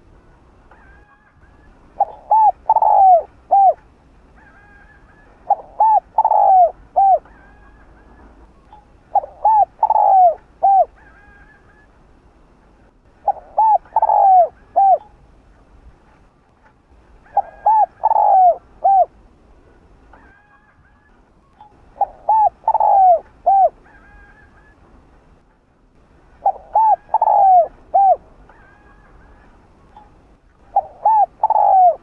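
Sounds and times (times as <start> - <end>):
dove cooing: 0.8 - 11.9, 13.2 - 15.2, 17.2 - 19.2, 20.2 - 24.8, 26.3 - 32.0.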